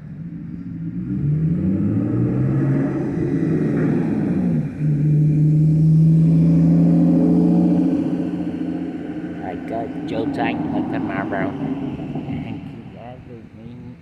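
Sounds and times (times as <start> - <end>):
vehicle engine accelerating: 0.0 - 14.0.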